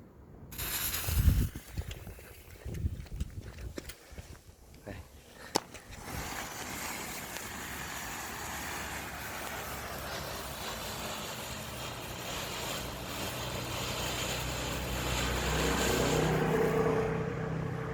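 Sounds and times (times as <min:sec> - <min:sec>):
fountain firework hissing: 0:00.5 - 0:02.2, 0:05.9 - 0:17.9.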